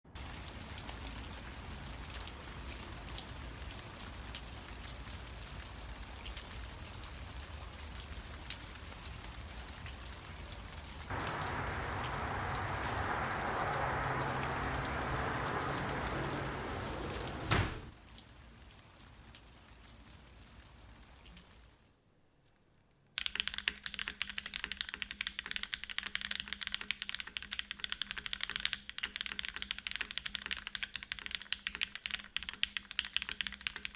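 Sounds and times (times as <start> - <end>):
steady hiss: 11.1 - 17.9
mechanical keyboard typing: 23.2 - 33.9.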